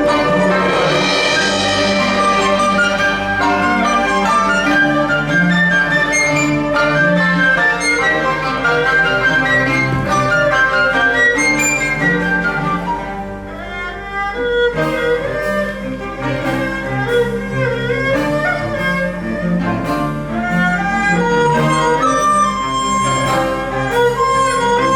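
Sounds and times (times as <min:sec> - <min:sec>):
chinese chamber ensemble playing: 0:00.0 - 0:24.9.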